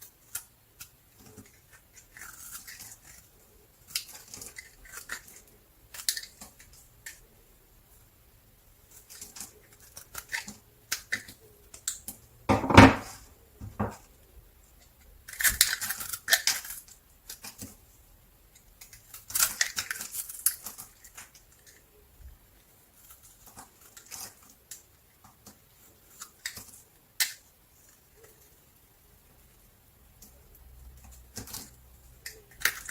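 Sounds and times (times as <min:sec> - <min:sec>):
heavy thud: 0:12.5 - 0:13.1.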